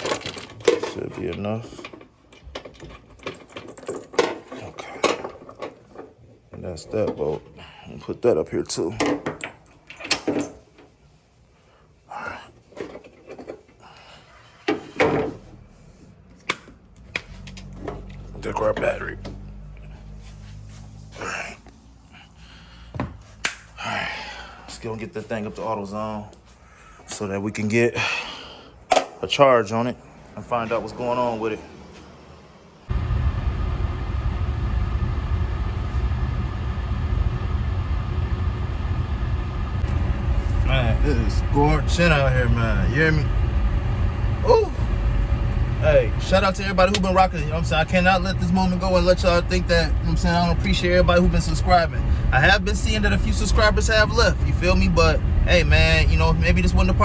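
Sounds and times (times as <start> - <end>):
metal hardware clicking and knocking: 0.0 - 6.1, 9.0 - 10.8
air conditioning fan blowing: 12.6 - 57.0
car engine rumble inside cabin: 32.9 - 57.0
person grunting: 44.4 - 44.8.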